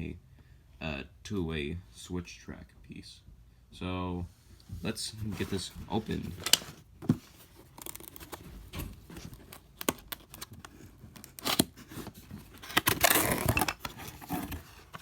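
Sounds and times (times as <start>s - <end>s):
packaging clicks and scrapes: 5.2s - 15.0s
packaging tearing: 7.6s - 15.0s.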